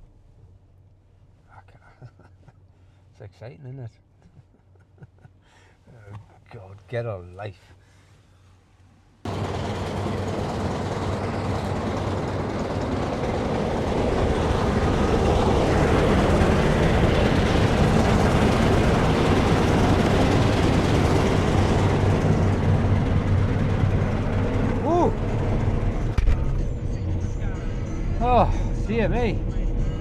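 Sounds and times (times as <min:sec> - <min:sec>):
combine harvester drone: 0:09.3 - 0:30.0.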